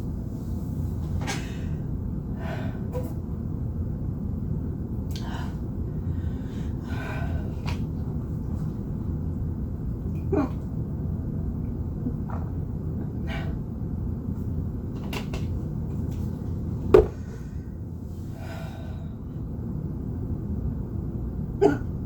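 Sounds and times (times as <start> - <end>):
steady low rumble: 0.0 - 15.0, 15.6 - 22.0
person hiccuping: 21.6 - 21.9.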